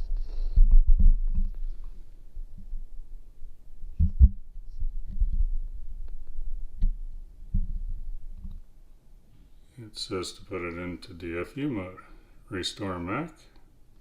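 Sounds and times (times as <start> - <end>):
soft low thumps: 0.0 - 8.7.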